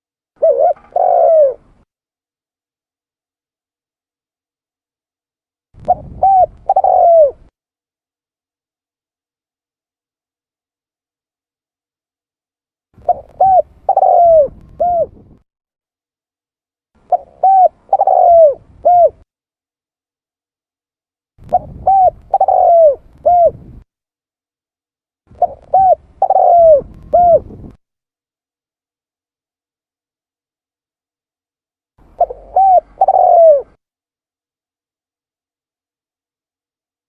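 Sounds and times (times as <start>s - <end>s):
dove cooing: 0.4s - 1.8s, 5.8s - 7.5s, 13.0s - 15.4s, 17.1s - 19.2s, 21.4s - 23.8s, 25.3s - 27.8s, 32.0s - 33.8s.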